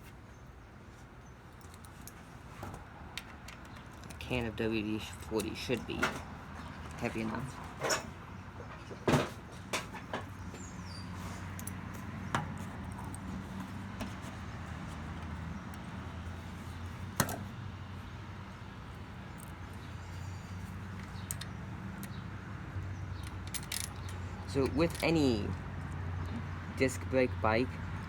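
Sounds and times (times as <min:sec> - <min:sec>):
tools and bike parts clicking: 0:01.6 - 0:02.3, 0:03.1 - 0:07.2, 0:11.4 - 0:16.1, 0:16.8 - 0:17.5, 0:19.3 - 0:26.1.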